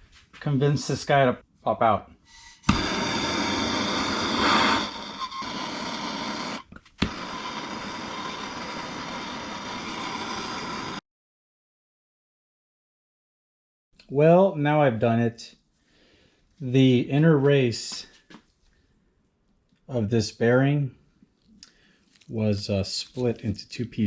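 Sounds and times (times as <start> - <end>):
impact gun running: 6.3 - 8.5.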